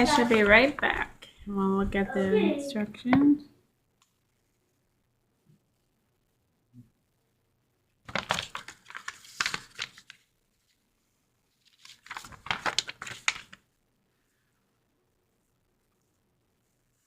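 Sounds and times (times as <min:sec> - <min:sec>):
crinkly material rustling: 0:00.0 - 0:01.0, 0:08.0 - 0:13.8.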